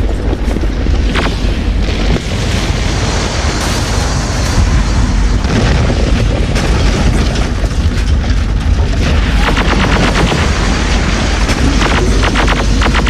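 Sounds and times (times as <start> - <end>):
rumble of explosions: 0.0 - 13.0
automatic weapon fire: 9.2 - 13.0.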